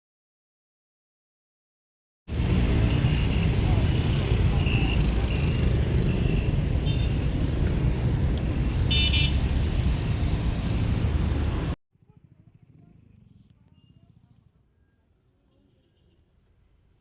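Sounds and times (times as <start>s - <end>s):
road traffic rumble: 2.3s - 14.4s.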